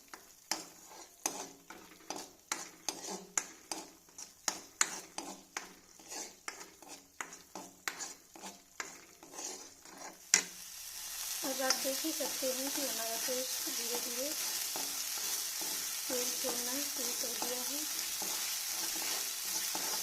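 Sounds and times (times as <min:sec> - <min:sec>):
soft sizzle: 0:00.0 - 0:20.0
spoon scraping a pan: 0:00.0 - 0:20.0.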